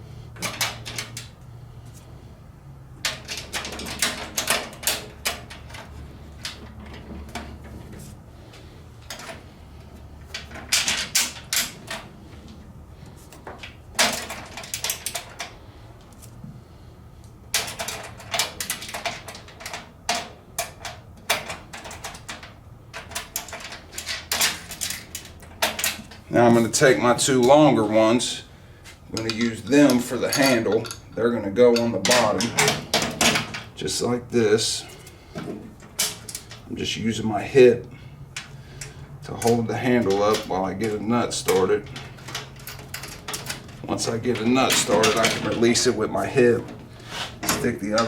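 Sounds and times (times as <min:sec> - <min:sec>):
metallic clicking and rattling: 0:00.4 - 0:01.4, 0:03.0 - 0:08.0, 0:09.0 - 0:15.8, 0:17.5 - 0:26.3, 0:29.1 - 0:33.8, 0:34.8 - 0:36.7, 0:38.3 - 0:48.0.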